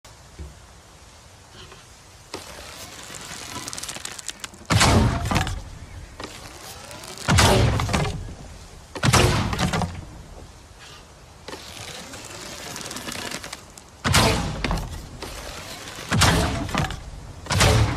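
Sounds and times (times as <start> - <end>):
bow string creaking draw: 1.5 - 17.9
heavy arrow release hits: 2.3 - 8.4, 9.0 - 10.1, 11.5 - 17.9.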